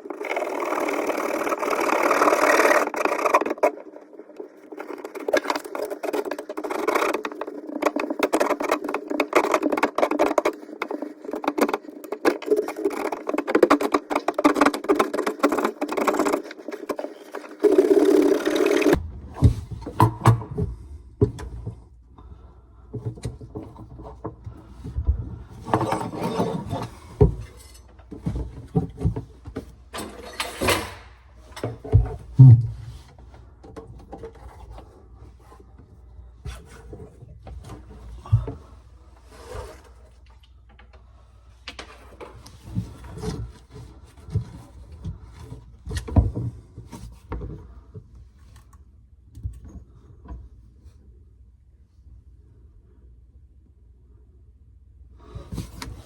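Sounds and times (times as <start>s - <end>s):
objects knocking and rustling: 0.0s - 22.1s, 22.8s - 35.8s.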